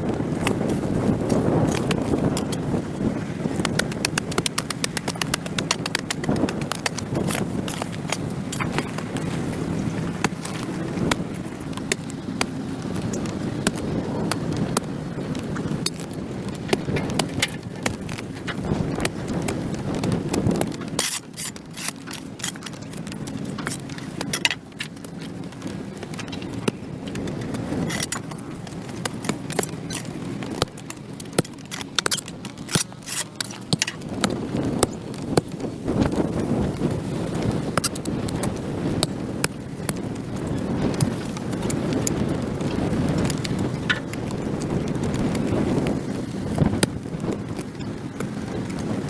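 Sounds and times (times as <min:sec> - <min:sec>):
hand tool scraping concrete: 0:20.9 - 0:24.6, 0:26.4 - 0:34.0.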